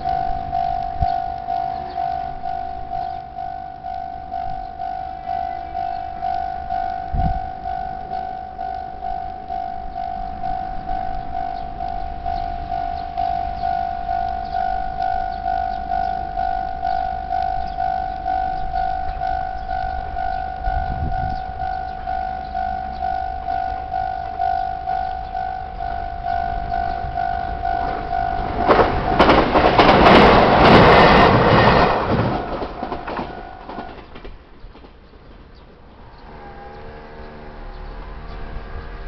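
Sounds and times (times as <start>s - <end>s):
level crossing bell ringing: 0.0s - 29.4s
train clattering over rails: 0.0s - 36.9s.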